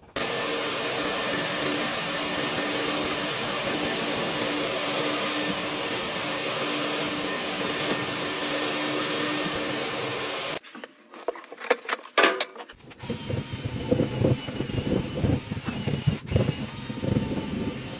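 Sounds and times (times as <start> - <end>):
vacuum cleaner running: 0.0 - 10.6.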